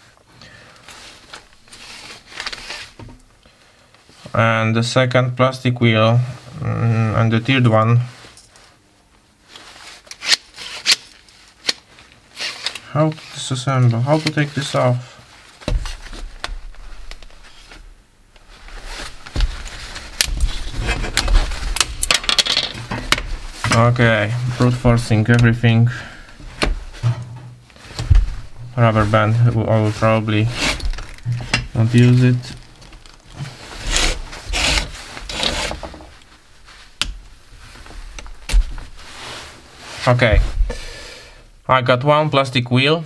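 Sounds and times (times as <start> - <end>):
hard plastic parts scraping: 15.6 - 41.0
plastic clicks and knocks: 37.0 - 37.3.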